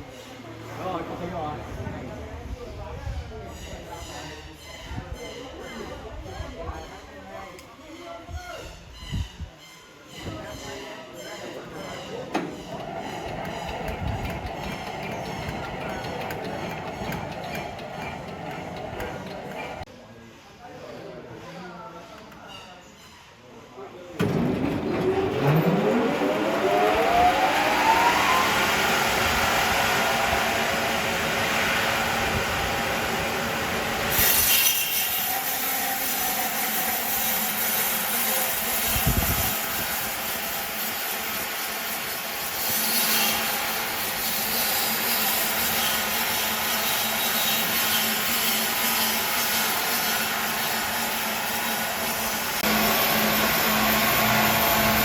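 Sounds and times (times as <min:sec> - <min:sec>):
wood-processing machinery running: 0:12.3 - 0:19.8, 0:24.2 - 0:55.0.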